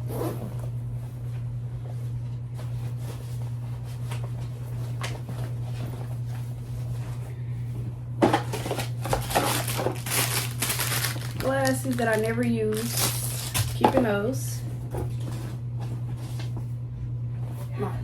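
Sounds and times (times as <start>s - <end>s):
steady low hum: 0.0s - 18.0s
clatter of items handled: 8.2s - 16.7s
rustling in a tool bag: 8.5s - 13.9s.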